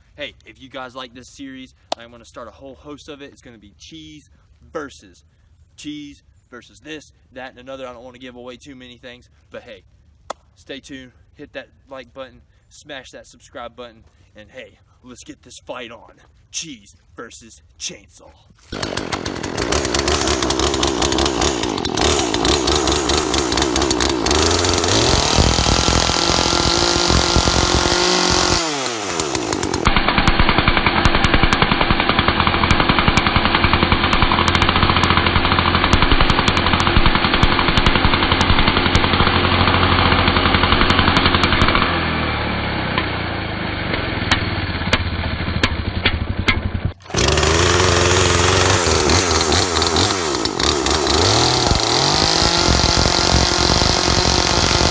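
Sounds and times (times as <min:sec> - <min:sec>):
chainsaw revving: 0:18.6 - 0:44.9, 0:47.0 - 0:54.9.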